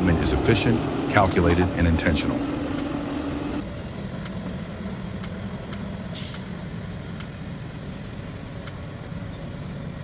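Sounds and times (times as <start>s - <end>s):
excavator diesel engine running: 0.0s - 10.0s
faint regular clicks: 3.8s - 7.8s.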